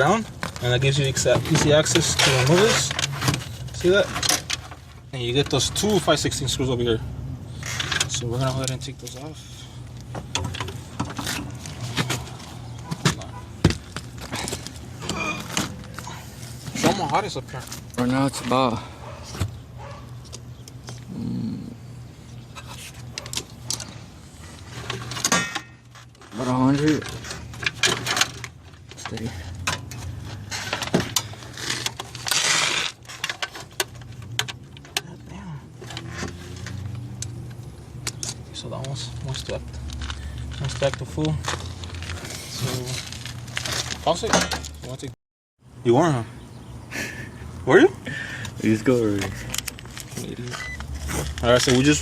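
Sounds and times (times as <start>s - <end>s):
scraping rustle: 0.2s - 5.6s, 24.4s - 34.2s, 39.9s - 44.9s
metal tools clinking: 24.7s - 35.0s, 43.7s - 45.0s
nut driver clicking and scraping: 35.8s - 38.9s.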